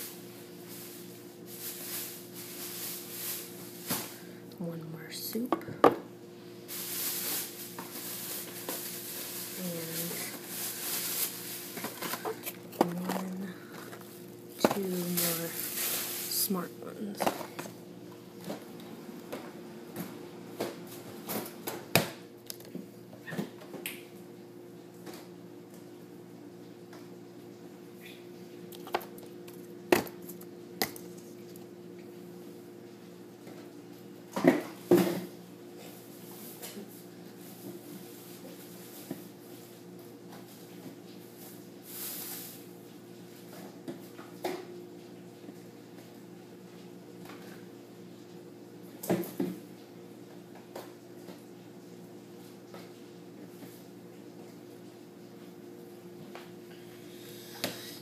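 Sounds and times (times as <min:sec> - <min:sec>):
steady low hum: 0:00.0 - 0:33.5
groceries knocking and clattering: 0:07.1 - 0:16.0, 0:17.2 - 0:17.7.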